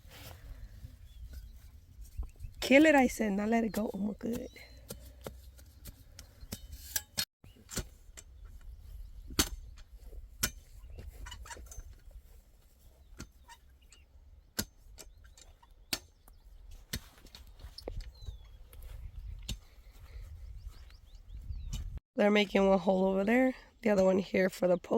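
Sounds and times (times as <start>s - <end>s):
tools striking stony ground: 3.7s - 8.6s, 9.3s - 12.1s, 13.1s - 16.3s.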